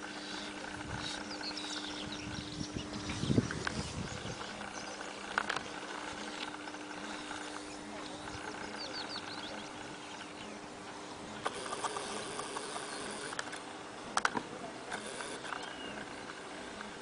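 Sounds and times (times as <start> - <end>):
steady background noise: 0.0 - 17.0
sharp clicks: 0.4 - 10.3, 11.4 - 17.0.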